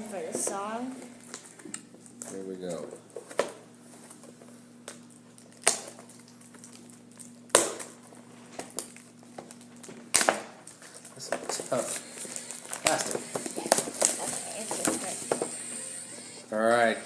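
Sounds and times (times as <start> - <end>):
steady low hum: 0.0 - 17.0
plastic packaging cracking: 4.8 - 15.5.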